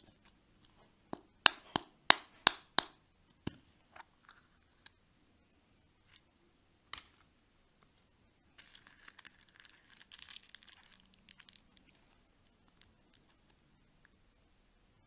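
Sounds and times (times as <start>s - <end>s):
wrapper crinkling and tearing: 8.6s - 13.3s.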